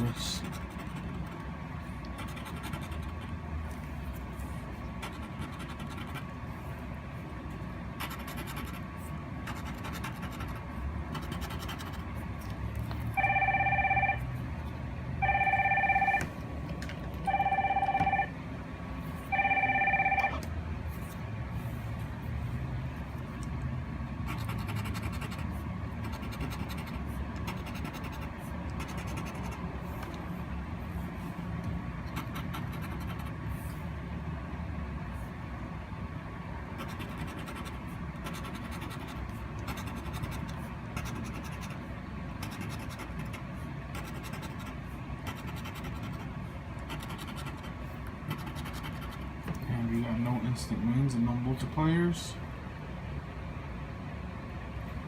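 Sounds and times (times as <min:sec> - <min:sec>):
low steady rumble: 0:00.0 - 0:55.0
coin scratching a ticket: 0:00.2 - 0:01.4, 0:02.2 - 0:03.3, 0:05.0 - 0:06.2, 0:08.0 - 0:08.9, 0:09.5 - 0:12.1, 0:24.2 - 0:29.6, 0:32.1 - 0:33.4, 0:36.8 - 0:41.8, 0:42.4 - 0:46.3, 0:46.9 - 0:49.2
phone ringing: 0:13.2 - 0:14.4, 0:15.2 - 0:16.4, 0:17.2 - 0:18.4, 0:19.3 - 0:20.4.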